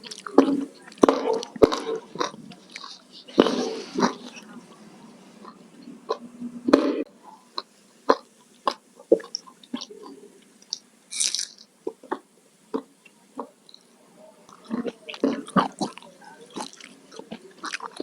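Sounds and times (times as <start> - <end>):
food crunch: 0.0 - 4.3, 10.6 - 11.7, 14.6 - 18.0
wet mouth clicks and smacks: 15.1 - 18.0.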